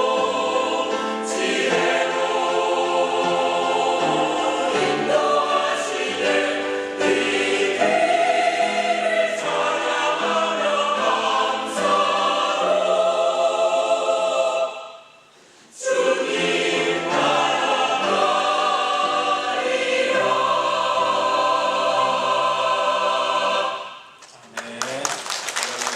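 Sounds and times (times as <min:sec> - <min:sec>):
church choir singing: 0:00.0 - 0:24.3
applause: 0:24.2 - 0:25.9.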